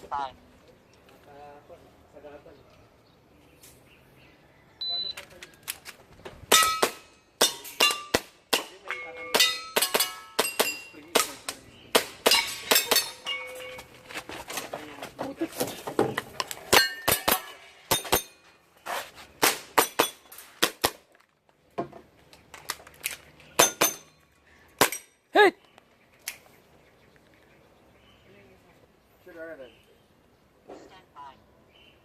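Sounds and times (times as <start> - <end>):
metallic ring of targets: 6.5 - 11.5, 12.1 - 14.0, 16.7 - 18.4, 23.6 - 25.2.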